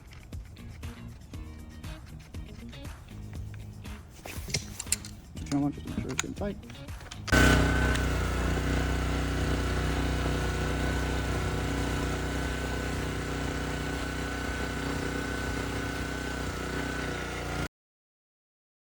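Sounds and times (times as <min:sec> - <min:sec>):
pressure washer engine running: 0:07.3 - 0:17.7.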